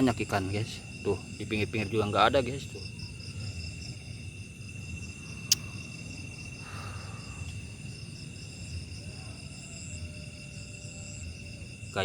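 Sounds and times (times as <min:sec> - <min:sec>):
insects trilling: 0:00.0 - 0:12.0
sharp click: 0:05.5 - 0:05.7.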